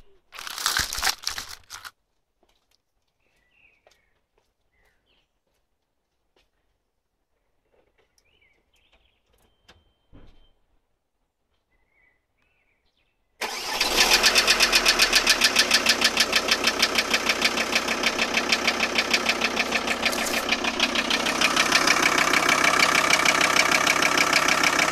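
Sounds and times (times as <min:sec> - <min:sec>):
diesel engine idling with clatter: 0:13.4 - 0:24.9
diesel engine starting: 0:13.4 - 0:24.9.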